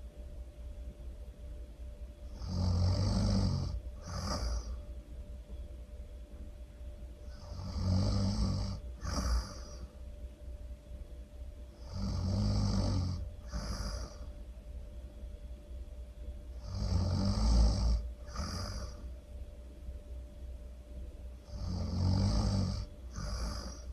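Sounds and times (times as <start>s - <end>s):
person snoring loudly: 2.3s - 4.8s, 7.3s - 9.9s, 11.8s - 14.3s, 16.6s - 19.1s, 21.4s - 23.9s.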